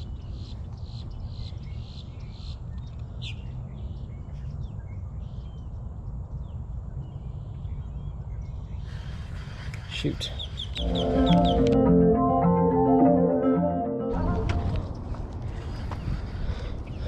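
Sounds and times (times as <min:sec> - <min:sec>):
small birds chirping: 0:00.0 - 0:11.7.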